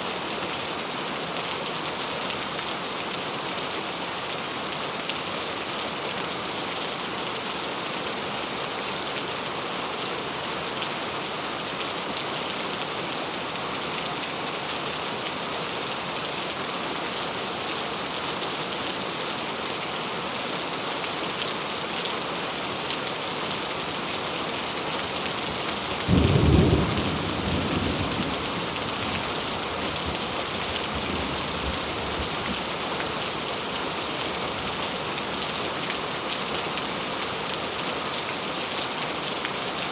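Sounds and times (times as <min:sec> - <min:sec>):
thunderclap rumbling: 0:26.1 - 0:29.0.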